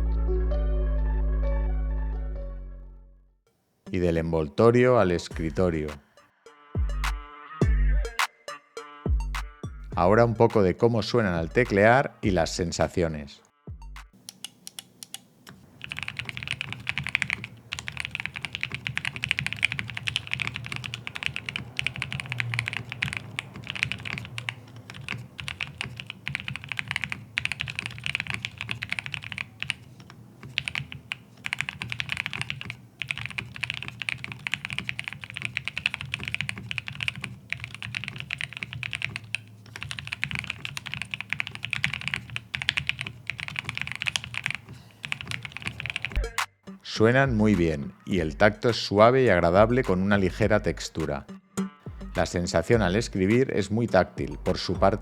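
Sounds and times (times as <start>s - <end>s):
fast typing on mechanical keyboard: 14.3s - 46.2s.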